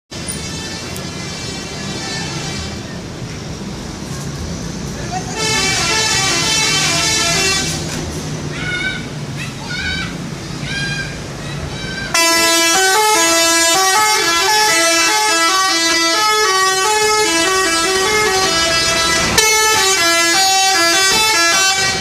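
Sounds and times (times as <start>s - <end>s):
multi-note musical bus horn: 0.2s - 2.9s, 5.3s - 8.0s, 12.1s - 22.0s.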